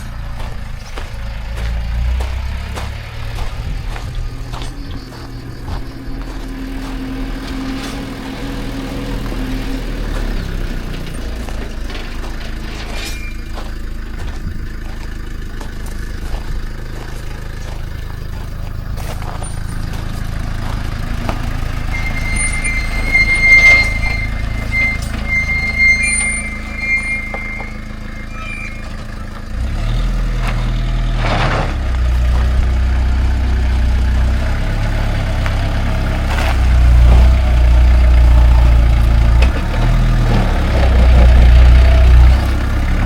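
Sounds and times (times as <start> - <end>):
vehicle engine running: 0.0 - 43.0
high-pitched squeal: 2.5 - 14.4, 21.0 - 30.0.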